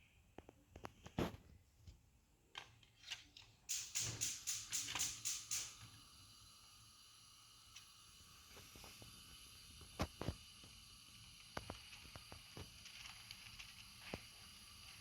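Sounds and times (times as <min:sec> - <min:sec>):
sharp clicks: 0:03.7 - 0:05.8.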